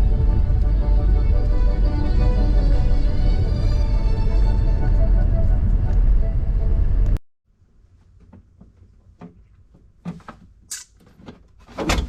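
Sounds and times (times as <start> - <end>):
loud background music: 0.0 - 6.7.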